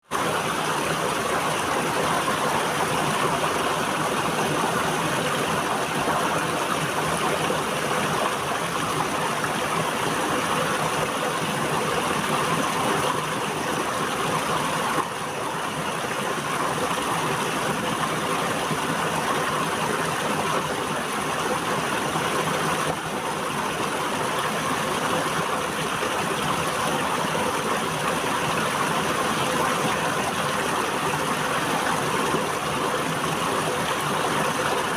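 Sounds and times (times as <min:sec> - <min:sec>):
river water flowing: 0:00.0 - 0:34.9.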